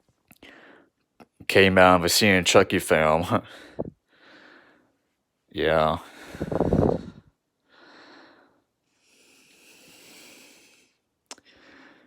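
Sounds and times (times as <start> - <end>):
faint breaths: 0.4 - 1.0, 3.4 - 5.1, 6.0 - 12.0.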